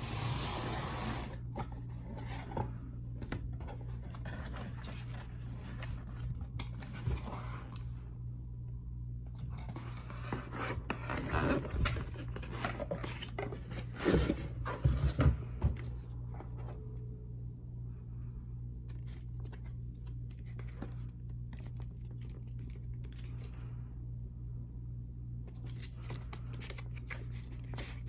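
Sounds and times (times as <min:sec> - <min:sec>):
steady low hum: 0:00.0 - 0:28.0
packaging scraping and rustling: 0:09.4 - 0:15.5.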